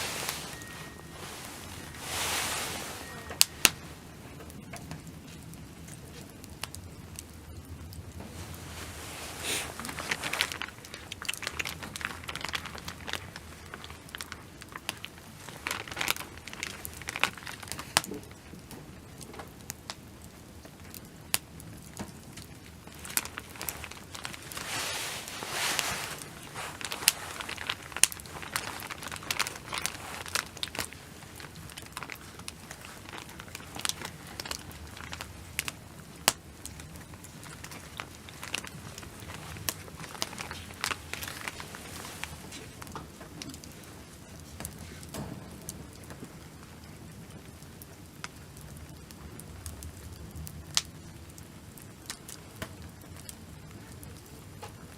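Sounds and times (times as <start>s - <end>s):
crinkling and rustling: 0.0s - 19.9s, 20.6s - 48.7s.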